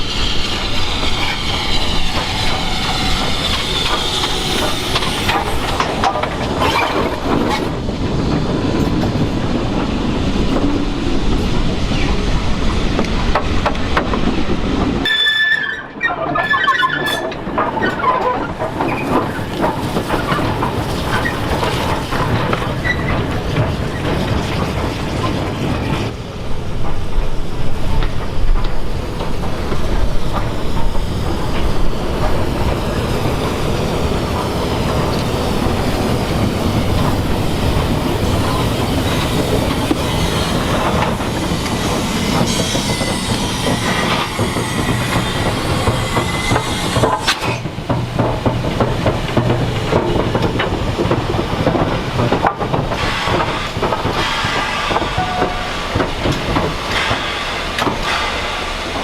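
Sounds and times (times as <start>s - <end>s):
train wheels rumbling on rails: 0.0s - 59.0s
faint wheel squeal: 15.0s - 18.4s.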